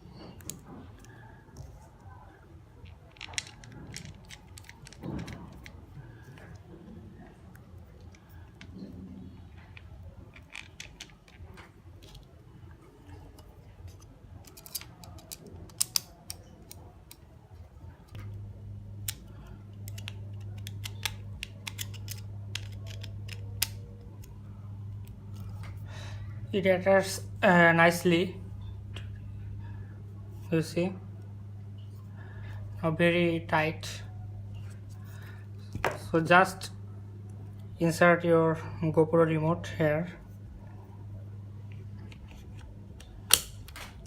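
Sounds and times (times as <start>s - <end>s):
steady low hum: 0.0s - 44.0s
plastic parts clicking: 2.8s - 5.8s, 9.6s - 12.3s, 13.3s - 17.2s, 19.0s - 24.3s, 42.1s - 44.0s.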